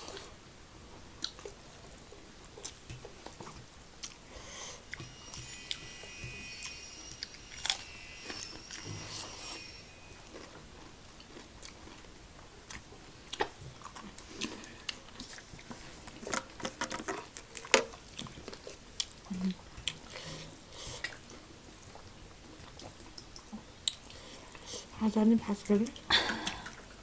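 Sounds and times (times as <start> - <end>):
chewing and biting fried chicken: 12.7 - 15.3.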